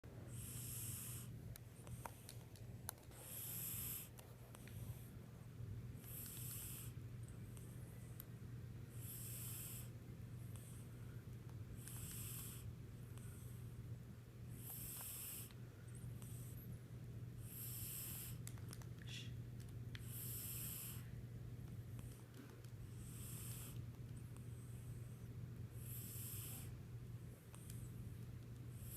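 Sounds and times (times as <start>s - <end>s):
steady low hum: 0.1s - 28.9s
cat snoring: 0.3s - 1.3s, 3.1s - 4.1s, 6.0s - 8.0s, 8.9s - 10.8s, 11.8s - 13.6s, 14.5s - 15.5s, 16.2s - 16.6s, 17.4s - 18.4s, 20.0s - 21.1s, 22.9s - 23.8s, 25.8s - 26.8s.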